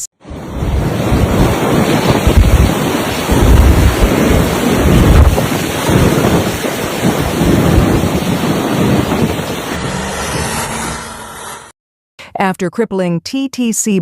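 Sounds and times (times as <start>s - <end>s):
wind buffeting microphone: 0.2s - 10.1s.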